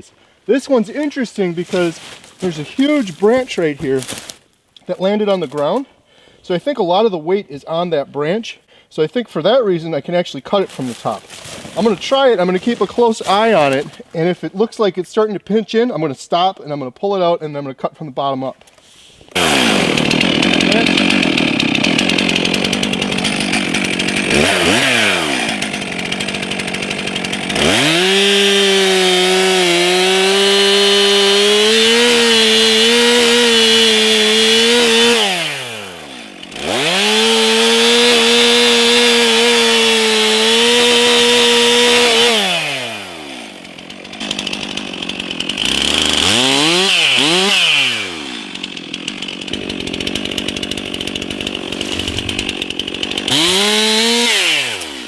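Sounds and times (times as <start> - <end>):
chainsaw cutting wood: 1.0 - 4.6, 10.6 - 14.4, 18.8 - 55.0.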